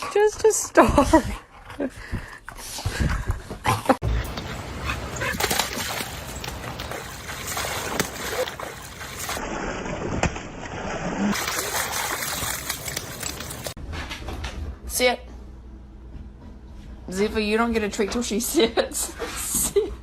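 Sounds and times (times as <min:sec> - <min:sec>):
dog splashing in water: 0:04.2 - 0:13.8.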